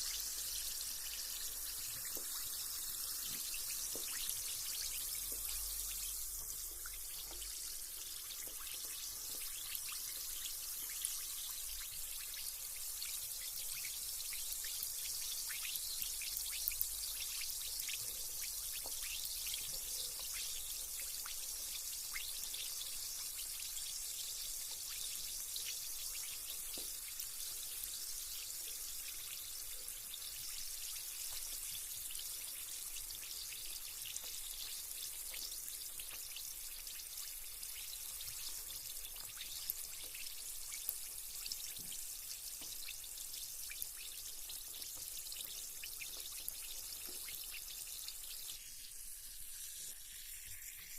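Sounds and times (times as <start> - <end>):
bath bomb fizzing in water: 0.0 - 50.9.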